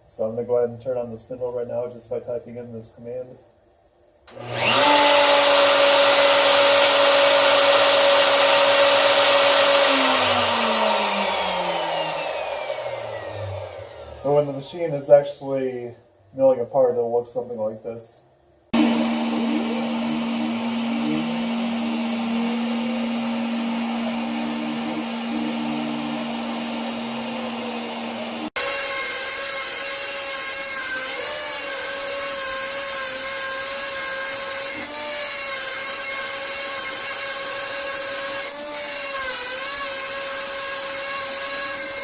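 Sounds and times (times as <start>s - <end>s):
router spindle whine: 4.3s - 15.0s, 18.8s - 42.0s.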